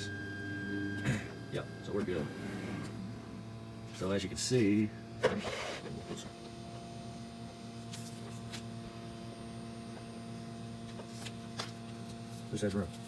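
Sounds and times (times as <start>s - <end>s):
three d printer fan humming: 0.0s - 13.0s.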